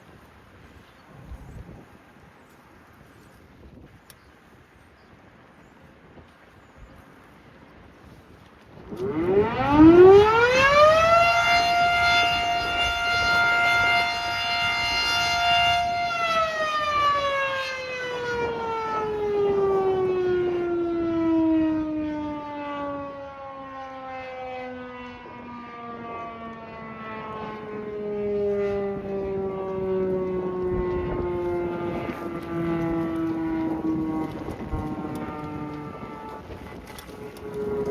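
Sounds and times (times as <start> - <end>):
electromechanical siren wailing: 8.8 - 37.9.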